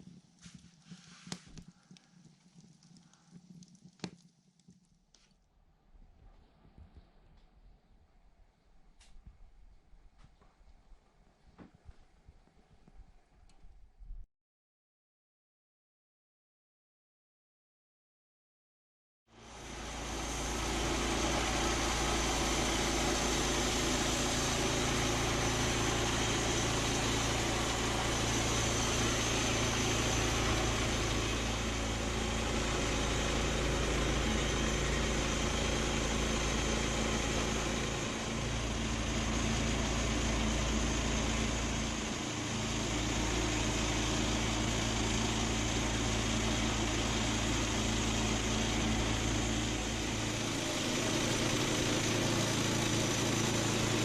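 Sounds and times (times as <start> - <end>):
engine running: 19.3 - 54.0.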